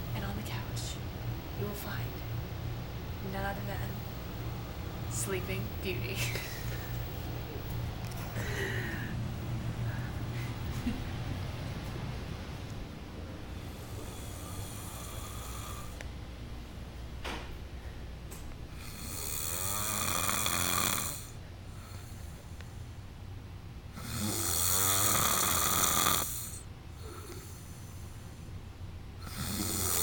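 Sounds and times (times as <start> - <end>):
man snoring: 13.6 - 16.0, 18.7 - 22.3, 23.9 - 27.8, 29.2 - 30.0.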